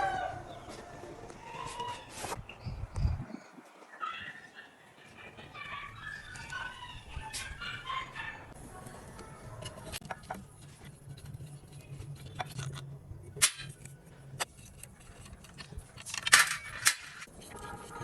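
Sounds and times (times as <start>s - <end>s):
scraping: 0.0s - 3.4s, 4.5s - 18.0s
low steady hum: 0.0s - 3.9s
metal tools clinking: 8.6s - 18.0s.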